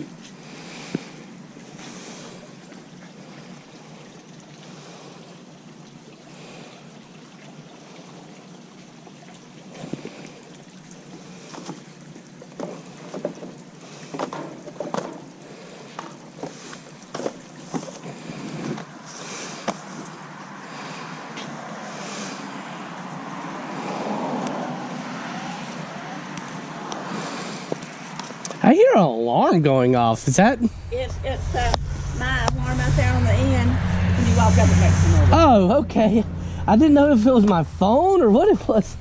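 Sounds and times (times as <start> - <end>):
wind buffeting microphone: 30.2 - 39.0.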